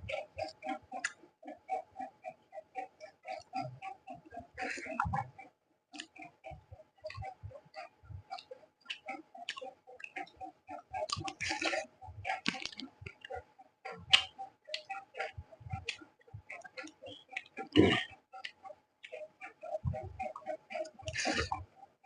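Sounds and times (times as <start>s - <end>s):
tongue clicks: 0.1s - 1.2s, 5.9s - 13.4s, 14.0s - 21.6s
wet chewing: 10.9s - 13.4s
lip smacks: 11.0s - 13.3s, 14.0s - 16.0s.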